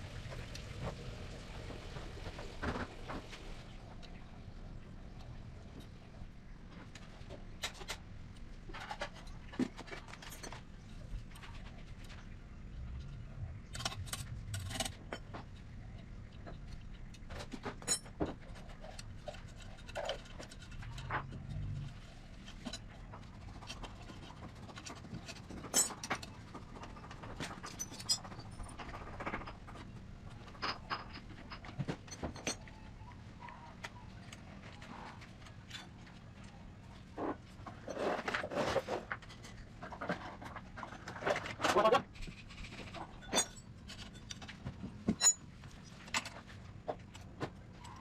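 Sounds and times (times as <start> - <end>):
tools and metal parts clinking: 7.3 - 12.2, 13.0 - 33.2, 37.6 - 48.0.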